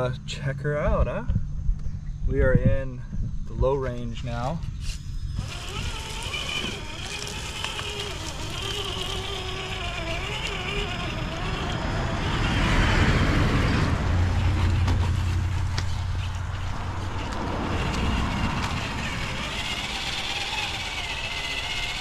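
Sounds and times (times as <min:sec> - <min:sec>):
steady low rumble: 0:00.0 - 0:06.2, 0:11.2 - 0:21.2
toy car electric motor whining: 0:04.5 - 0:22.0.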